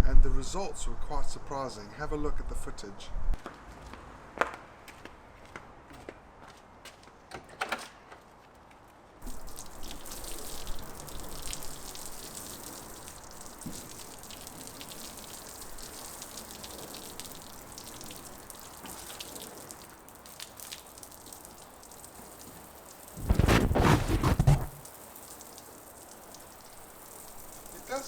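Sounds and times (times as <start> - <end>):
water spraying onto metal panel: 9.2 - 28.0.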